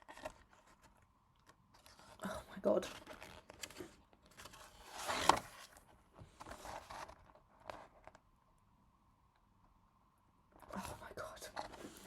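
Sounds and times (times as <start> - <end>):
book pages rustling: 0.0 - 2.2, 2.9 - 8.2.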